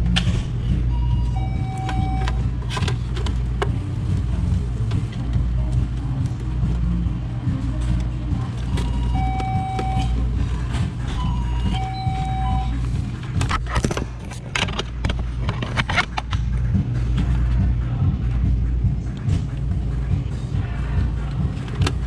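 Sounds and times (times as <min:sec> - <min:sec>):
low machinery hum: 0:00.0 - 0:22.0
electronic beeps: 0:00.9 - 0:02.6, 0:08.6 - 0:10.4, 0:11.0 - 0:13.0
sharp clicks and rattles: 0:12.8 - 0:17.4.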